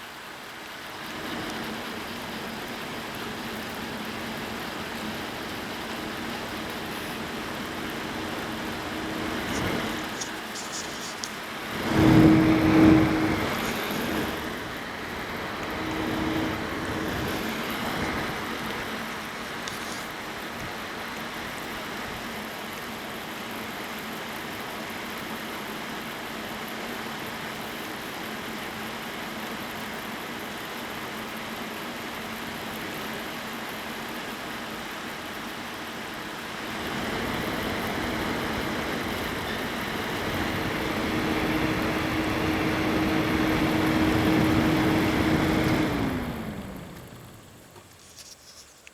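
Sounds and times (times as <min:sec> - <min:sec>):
coil whine whistle: 0:01.0 - 0:20.0, 0:36.4 - 0:48.3
computer whirring: 0:01.0 - 0:20.2, 0:36.3 - 0:48.9.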